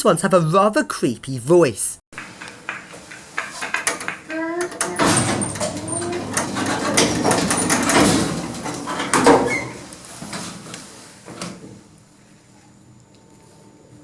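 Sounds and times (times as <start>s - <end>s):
lift doors sliding and closing: 4.8s - 10.4s.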